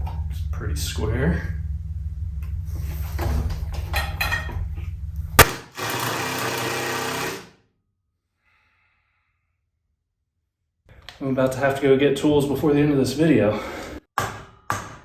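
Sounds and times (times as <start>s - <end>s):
cordless drill running: 5.4s - 7.5s.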